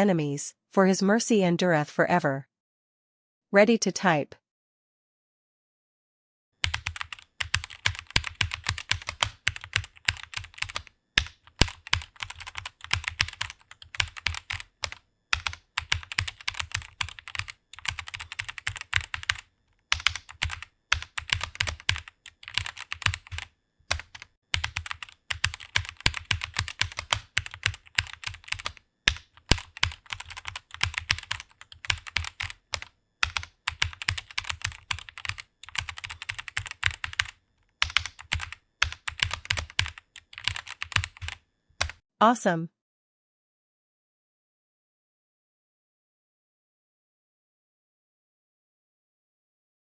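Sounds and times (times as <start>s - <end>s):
fast keyboard typing: 6.6s - 42.0s.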